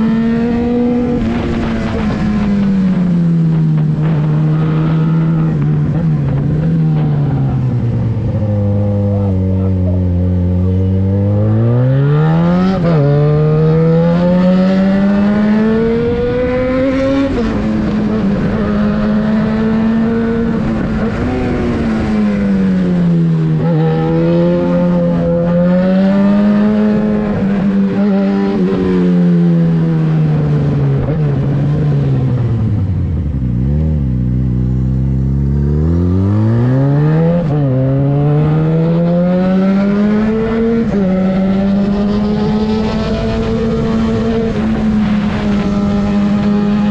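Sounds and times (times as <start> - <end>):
motorcycle engine revving: 0.0 - 46.9.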